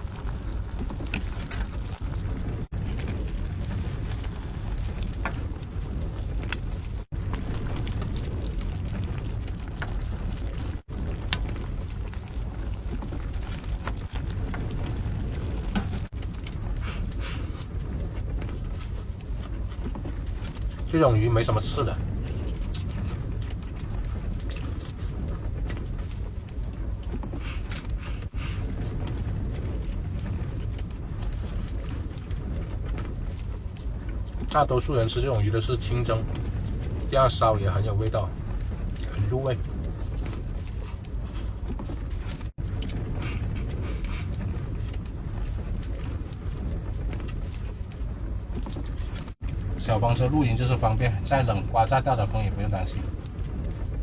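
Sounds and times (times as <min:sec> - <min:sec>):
strong wind blowing: 0:00.0 - 0:54.0.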